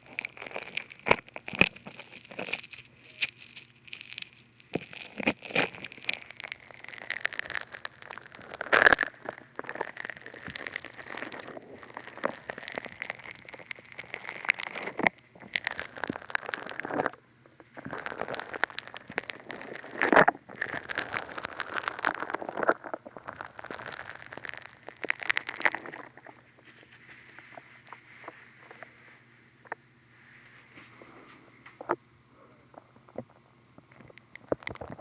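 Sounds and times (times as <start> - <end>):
foam soap squished on microphone: 0.0 - 17.0.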